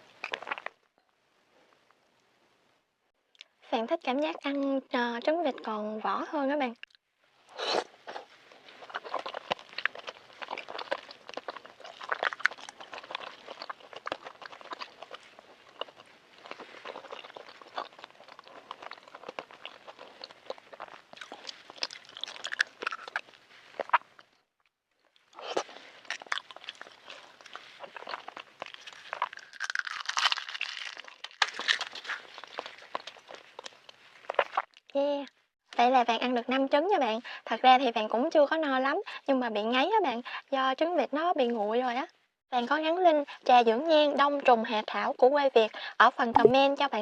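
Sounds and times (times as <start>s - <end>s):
wet chewing and smacking: 0.2s - 0.8s, 7.8s - 24.4s, 25.0s - 35.0s.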